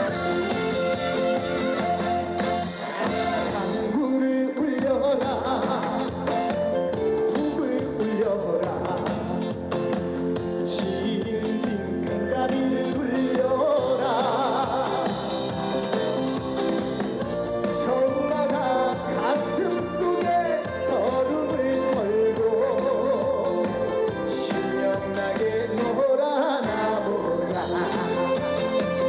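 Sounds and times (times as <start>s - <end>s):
man singing with vibrato: 0.0s - 9.7s, 10.6s - 16.2s, 17.5s - 29.0s
band backing track with steady beat: 0.0s - 29.0s.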